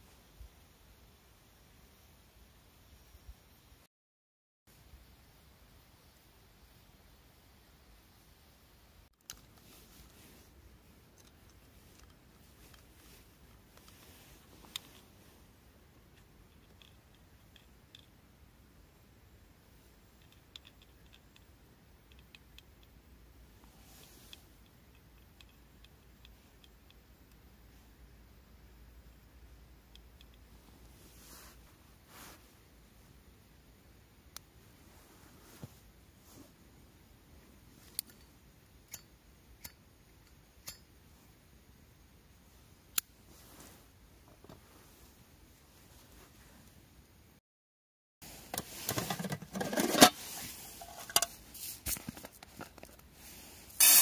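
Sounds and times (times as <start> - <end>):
soft hiss: 0.0 - 3.9, 4.7 - 47.4, 48.2 - 54.0
faint small clicks: 20.2 - 23.0, 24.0 - 27.5, 29.9 - 30.7.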